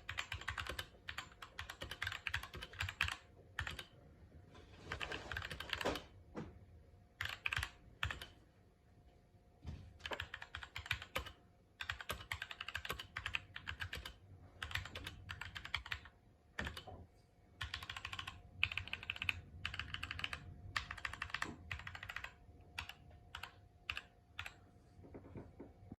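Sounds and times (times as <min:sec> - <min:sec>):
mechanical keyboard typing: 0:00.0 - 0:04.0, 0:04.9 - 0:06.1, 0:07.2 - 0:08.4, 0:10.0 - 0:16.9, 0:17.6 - 0:24.6.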